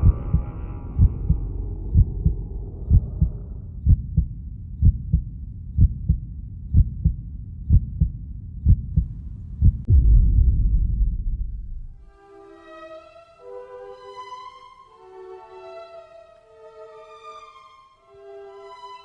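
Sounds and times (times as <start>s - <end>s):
heartbeat lub-dub thumps: 0.0s - 12.0s.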